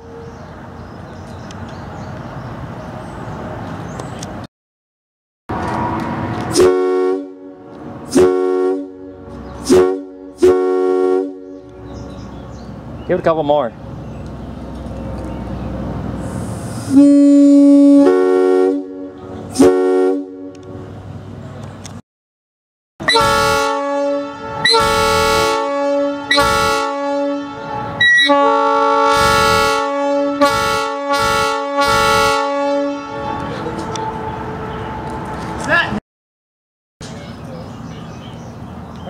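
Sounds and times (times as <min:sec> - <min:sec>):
locomotive air horn blasts: 0:06.5 - 0:11.7, 0:16.3 - 0:20.8, 0:23.0 - 0:35.1.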